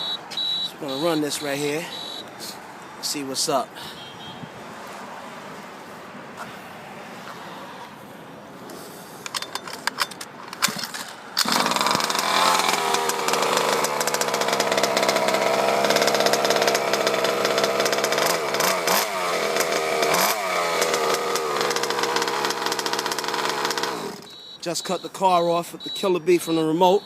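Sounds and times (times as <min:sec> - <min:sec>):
small two-stroke engine revving: 0:11.4 - 0:24.4.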